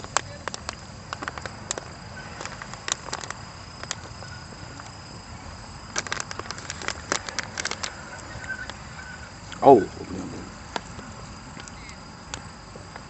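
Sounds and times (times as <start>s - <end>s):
campfire crackling: 0.0s - 13.0s.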